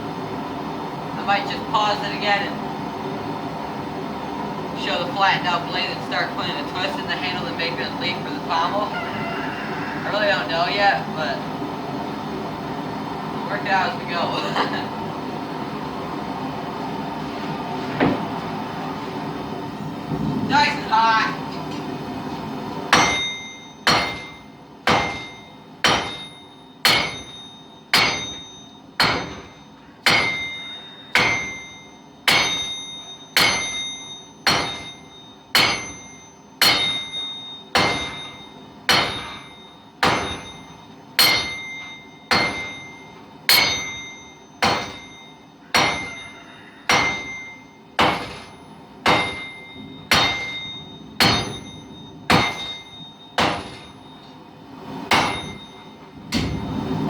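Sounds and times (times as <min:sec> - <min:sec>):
hammer striking hot steel: 0:22.9 - 0:54.4, 0:55.1 - 0:56.8.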